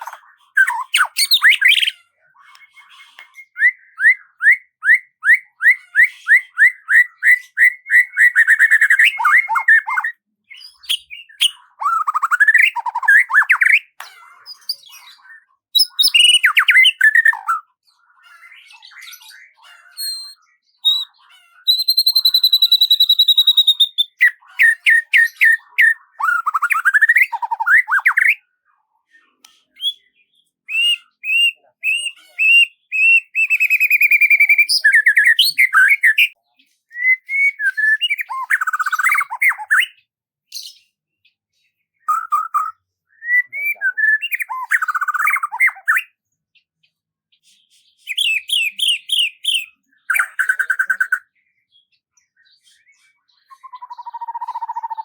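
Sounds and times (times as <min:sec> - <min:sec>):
birdsong: 0:00.0 - 0:55.0.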